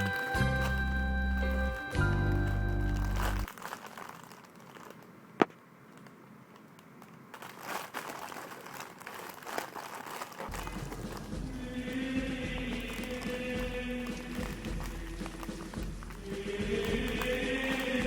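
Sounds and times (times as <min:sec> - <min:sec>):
background music: 0:00.0 - 0:03.5, 0:10.5 - 0:18.0
crinkling handling noise: 0:00.0 - 0:18.0.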